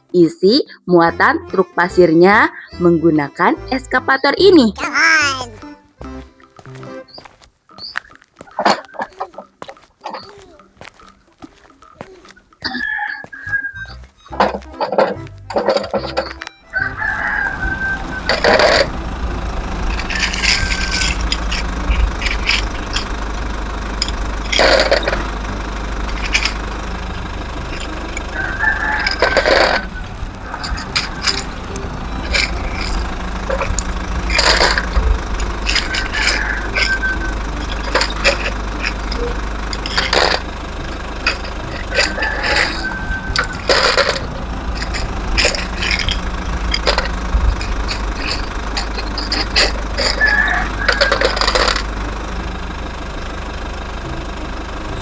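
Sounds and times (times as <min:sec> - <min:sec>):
low engine-like rumble: 0:10.0 - 0:55.0
stones clattering into toy truck: 0:27.8 - 0:29.9, 0:32.3 - 0:37.0, 0:37.6 - 0:40.5, 0:41.3 - 0:51.9.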